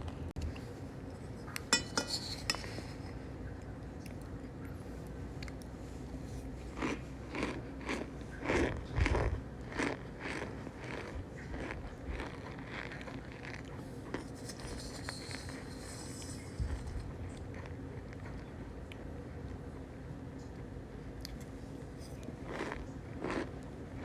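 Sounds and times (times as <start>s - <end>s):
cornstarch crunching and squeaking: 6.7s - 17.1s.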